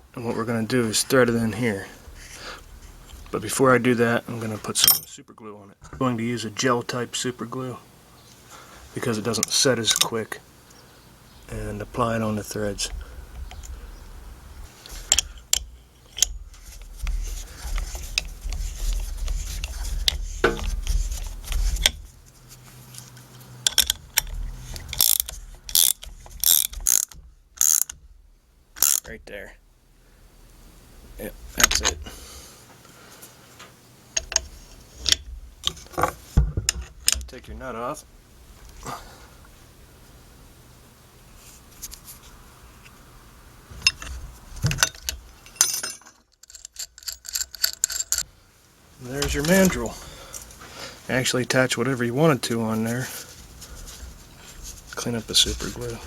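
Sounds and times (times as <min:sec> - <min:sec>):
metal nut clinking and rattling: 0:14.7 - 0:22.1, 0:23.6 - 0:28.0, 0:28.8 - 0:29.1, 0:43.8 - 0:48.3
wrench clicking: 0:14.8 - 0:16.4, 0:23.6 - 0:28.0, 0:28.8 - 0:29.1, 0:46.4 - 0:48.2.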